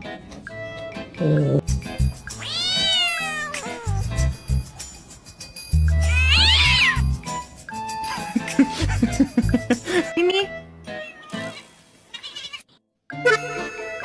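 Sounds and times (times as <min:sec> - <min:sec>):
background music with bass: 0:01.1 - 0:02.4, 0:03.8 - 0:04.8, 0:05.7 - 0:10.1
cat meowing: 0:02.4 - 0:04.0, 0:06.1 - 0:07.0, 0:11.0 - 0:12.7.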